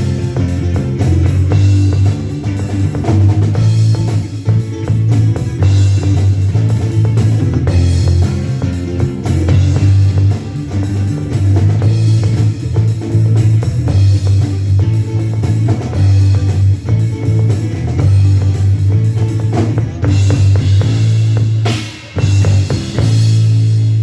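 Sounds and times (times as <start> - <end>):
bass drum: 0.0 - 24.0
bass line: 0.0 - 24.0
live rock band playing: 0.0 - 24.0.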